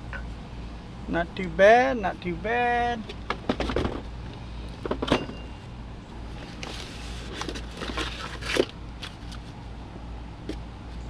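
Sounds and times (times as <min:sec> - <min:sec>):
steady low hum: 0:00.0 - 0:11.0
cardboard rustling and crinkling: 0:06.3 - 0:09.6.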